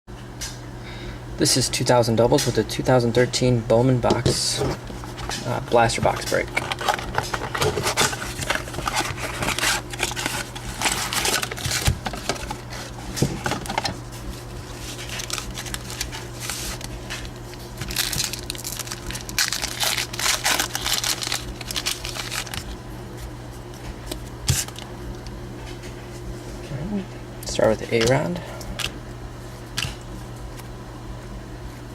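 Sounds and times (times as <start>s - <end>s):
steady low hum: 0.1s - 31.9s
plastic wrapping crinkling and tearing: 4.9s - 22.8s.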